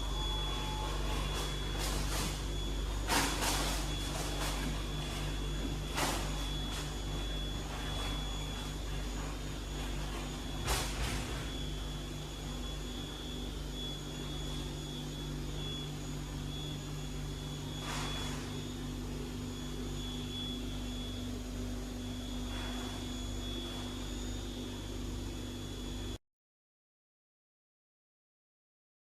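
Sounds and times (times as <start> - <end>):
lathe humming with high whine: 0.0 - 26.2.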